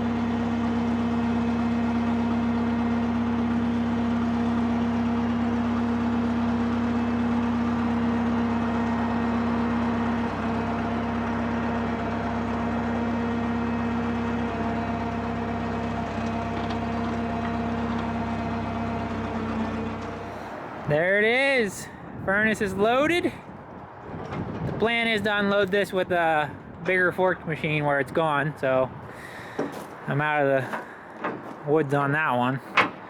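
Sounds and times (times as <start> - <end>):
crane engine running: 0.0 - 21.0, 28.9 - 31.6.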